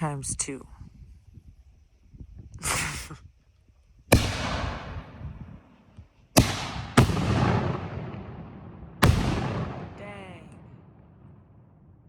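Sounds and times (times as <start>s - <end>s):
firework bangs echoing: 4.1s - 5.4s, 6.4s - 12.0s
firework launch rushing: 6.4s - 10.0s.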